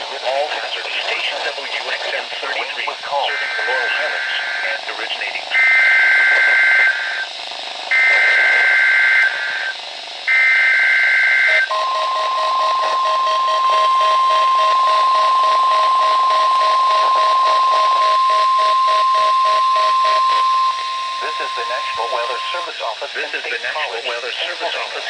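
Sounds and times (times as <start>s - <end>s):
harsh data tones: 3.0s - 7.3s, 7.9s - 25.0s
steady warning alarm tone: 3.1s - 25.0s
low pulsing beep: 11.5s - 22.7s.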